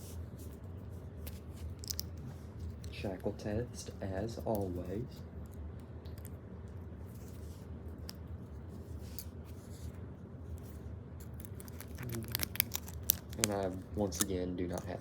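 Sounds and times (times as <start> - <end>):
low steady hum: 0.0 - 15.0
padlock clicking and rattling: 1.8 - 2.1, 11.3 - 15.0.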